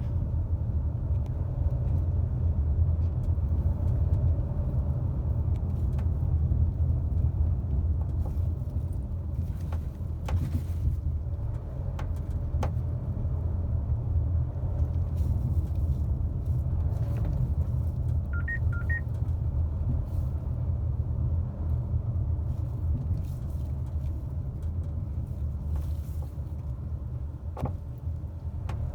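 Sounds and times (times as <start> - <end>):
road and tyre rumble: 0.0 - 28.9
short double beep: 18.4 - 19.0.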